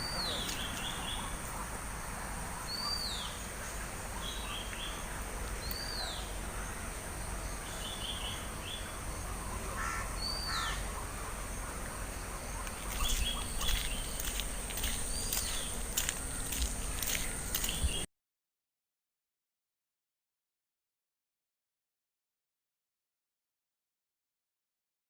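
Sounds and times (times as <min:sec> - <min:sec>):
birds chirping quickly: 0:00.0 - 0:01.7, 0:02.6 - 0:18.1.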